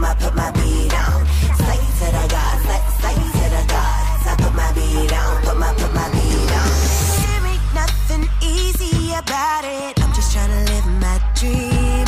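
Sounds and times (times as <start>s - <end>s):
held synth notes: 0.0s - 8.6s
heavy bass line: 0.0s - 12.0s
hip hop song: 0.0s - 12.0s
person singing: 0.0s - 12.0s.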